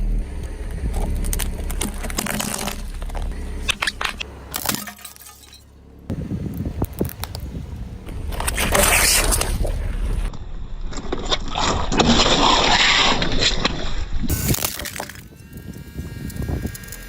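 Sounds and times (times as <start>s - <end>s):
tyre crushing brittle objects: 0.8s - 5.7s.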